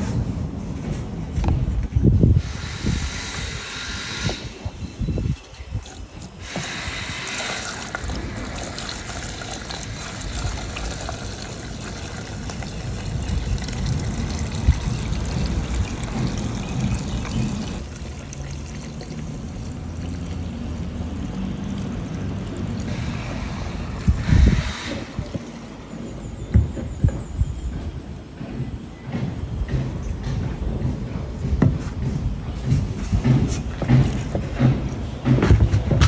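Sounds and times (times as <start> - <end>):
gasoline pouring into fuel tank: 2.4 - 26.8.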